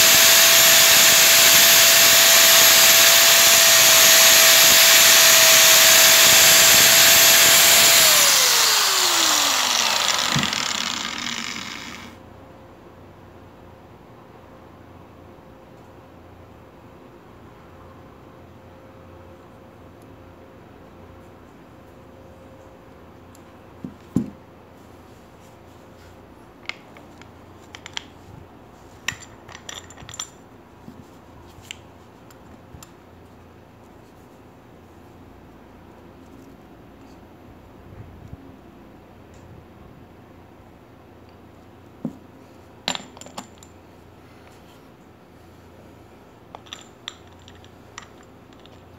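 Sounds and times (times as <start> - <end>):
electric motor whine and hiss: 0.0 - 12.2
motor spinning down: 0.0 - 12.2.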